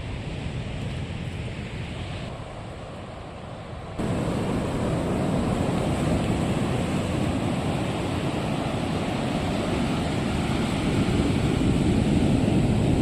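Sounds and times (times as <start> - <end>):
ocean surf washing on beach: 0.0 - 13.0
wind buffeting microphone: 3.9 - 13.0.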